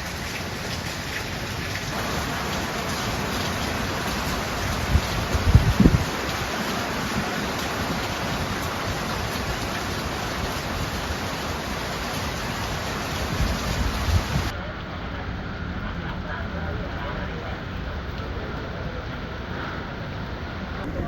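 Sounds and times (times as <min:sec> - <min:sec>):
heavy rain pouring: 0:00.0 - 0:21.0
wind gusts on microphone: 0:01.9 - 0:14.6, 0:19.4 - 0:21.0.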